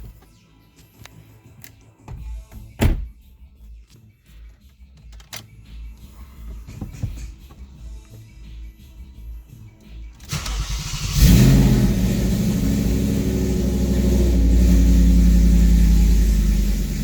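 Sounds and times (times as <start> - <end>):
engine starter cranking: 10.2 - 17.0
car engine loud unmuffled idle: 10.3 - 17.0.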